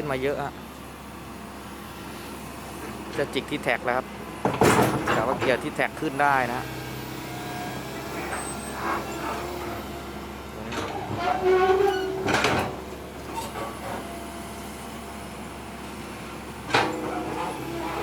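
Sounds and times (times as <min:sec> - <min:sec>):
diesel engine running: 0:00.0 - 0:18.0
metal clanks and squeals: 0:04.5 - 0:05.7, 0:07.3 - 0:14.6, 0:16.7 - 0:18.0.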